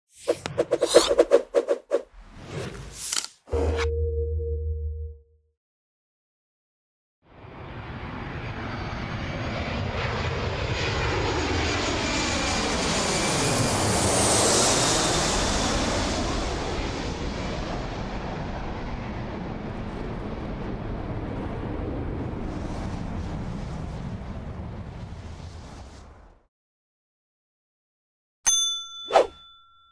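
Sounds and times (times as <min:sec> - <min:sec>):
airplane passing low overhead: 0:07.3 - 0:26.3.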